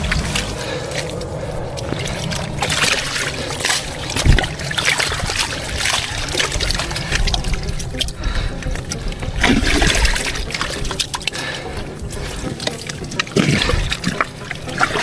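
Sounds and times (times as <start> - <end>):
low rumble: 0.0 - 12.5
mud squelching and water splashing: 0.0 - 15.0.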